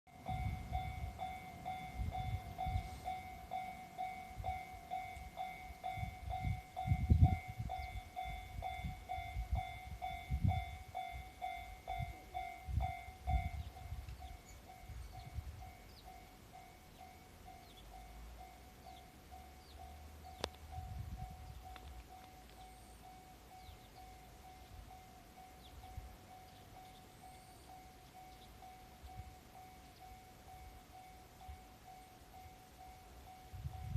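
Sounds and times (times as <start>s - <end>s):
level-crossing warning bell ringing: 0.1s - 33.9s.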